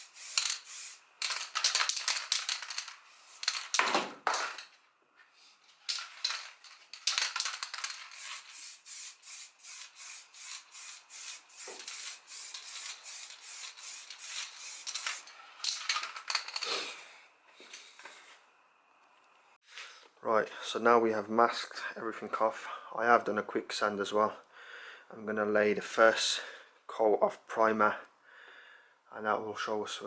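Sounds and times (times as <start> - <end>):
hand sanding strokes: 0.0 - 1.0.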